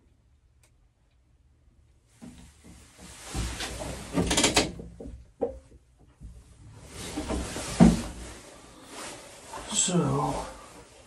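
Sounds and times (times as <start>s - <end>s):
hard parts clunking and scraping: 2.2s - 8.3s.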